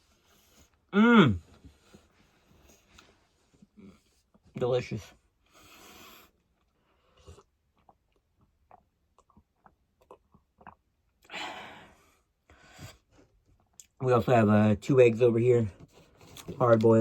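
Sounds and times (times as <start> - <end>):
soft breaths: 5.1 - 7.5
person chewing food: 6.5 - 11.3.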